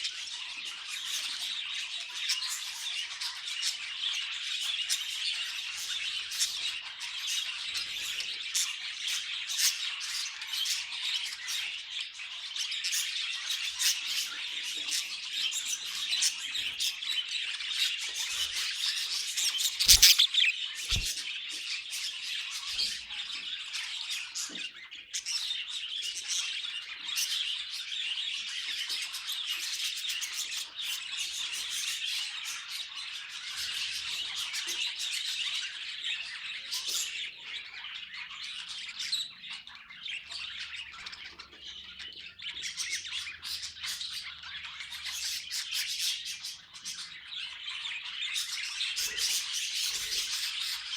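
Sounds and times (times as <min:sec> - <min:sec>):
budgies chattering and squawking: 0:00.0 - 0:50.9.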